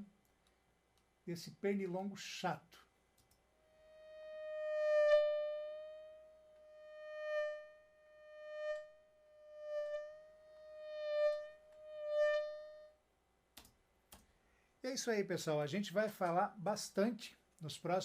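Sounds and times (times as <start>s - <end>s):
mosquito whine: 3.6s - 13.0s.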